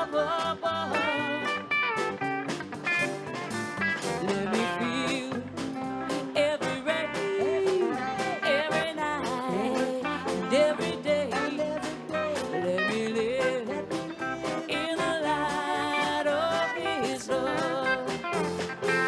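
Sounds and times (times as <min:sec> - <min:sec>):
guitar chords: 0:00.0 - 0:19.0
lead melody with sliding notes: 0:00.0 - 0:19.0.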